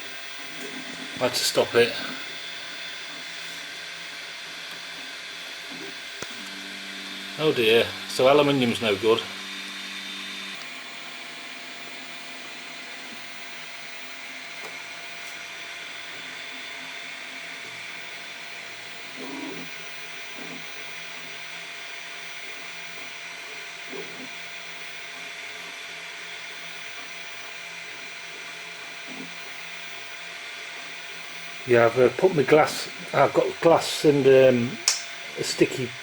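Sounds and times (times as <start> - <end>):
three d printer whirring: 0.0 - 12.5.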